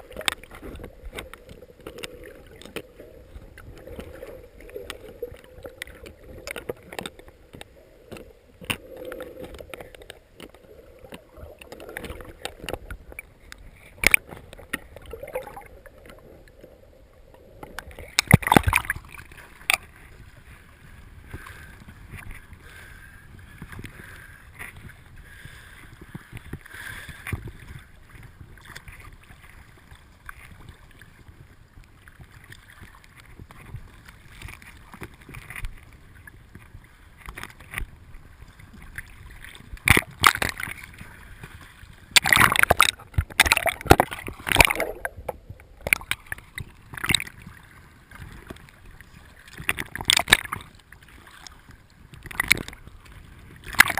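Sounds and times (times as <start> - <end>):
water noise: 0.0 - 53.9.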